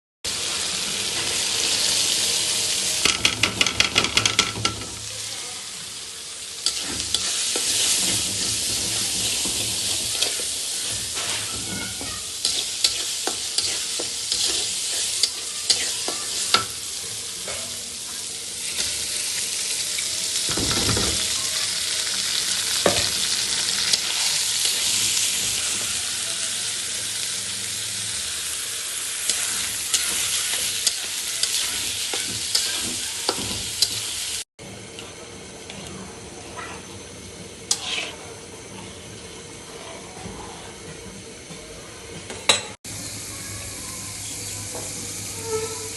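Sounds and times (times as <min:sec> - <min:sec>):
food sizzling in a pan: 0:00.3 - 0:45.9
utensil scraping a pan: 0:06.6 - 0:16.7, 0:37.7 - 0:39.0, 0:45.3 - 0:45.9.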